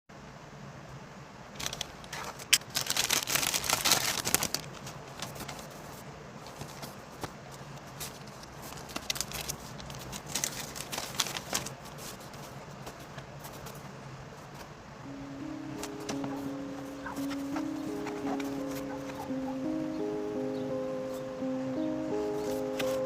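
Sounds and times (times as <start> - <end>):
faint low hum: 0.1 - 23.0
packaging crinkling: 1.6 - 13.9, 22.2 - 23.0.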